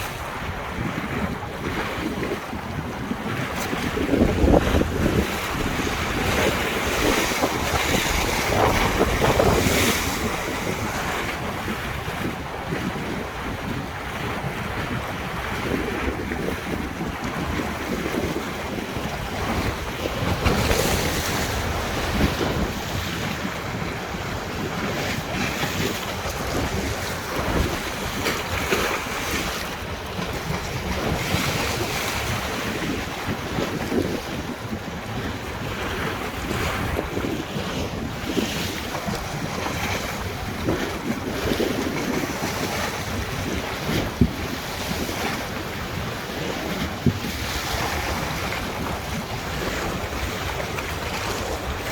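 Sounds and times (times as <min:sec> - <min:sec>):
river waves splashing: 0:00.0 - 0:51.9
wind buffeting microphone: 0:00.0 - 0:51.9.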